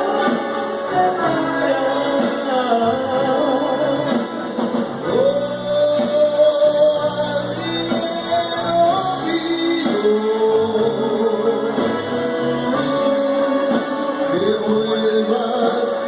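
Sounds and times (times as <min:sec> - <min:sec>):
live band playing: 0:00.0 - 0:16.0
person singing: 0:00.0 - 0:16.0.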